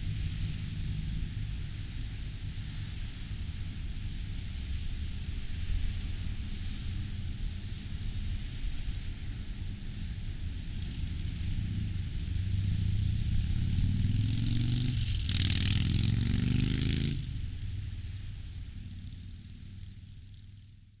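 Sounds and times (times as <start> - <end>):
engine running and revving: 10.4 - 21.0.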